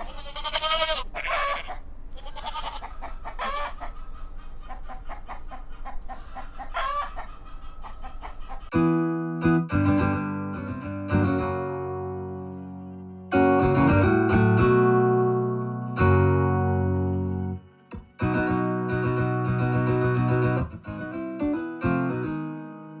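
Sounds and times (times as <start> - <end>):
acoustic guitar chords: 8.7 - 23.0.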